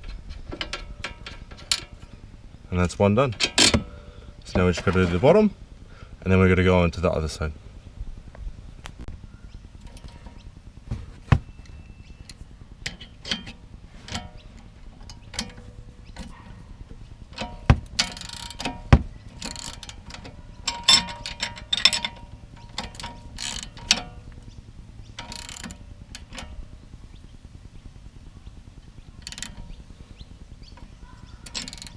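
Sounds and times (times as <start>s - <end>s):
hand ratchet clicking: 17.2s - 24.5s, 25.1s - 26.7s, 29.2s - 29.8s, 30.7s - 31.9s.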